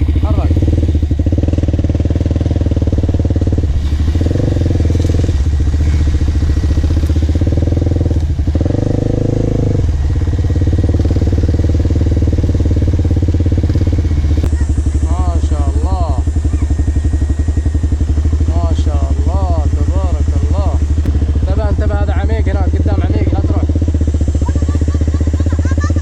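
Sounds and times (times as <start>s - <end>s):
quad bike engine running: 0.0s - 26.0s.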